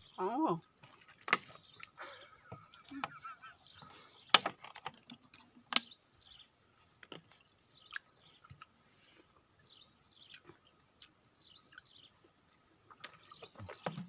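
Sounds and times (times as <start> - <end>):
birds chirping: 0.0 - 14.0.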